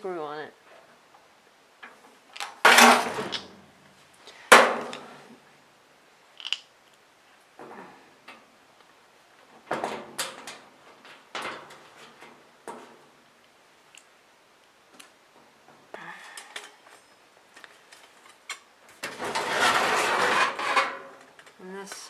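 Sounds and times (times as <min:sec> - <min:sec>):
metal heater parts knocking: 0:02.6 - 0:03.5, 0:04.5 - 0:05.1.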